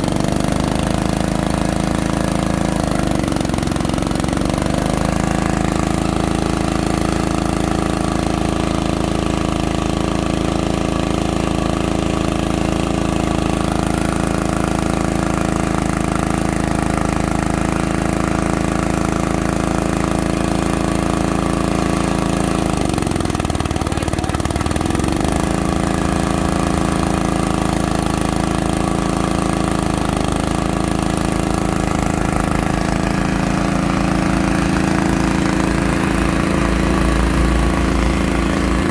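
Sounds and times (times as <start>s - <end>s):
drilling machine engine running: 0.0s - 38.9s.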